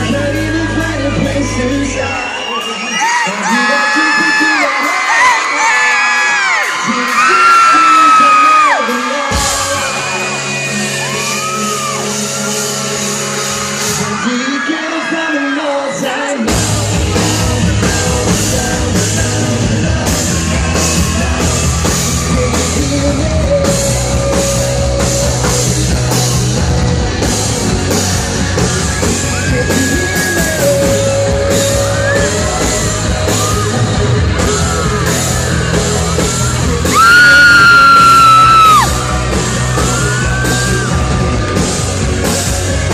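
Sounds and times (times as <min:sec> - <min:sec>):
fans screaming: 0:00.0 - 0:42.9
drum and bass beat: 0:16.4 - 0:42.9.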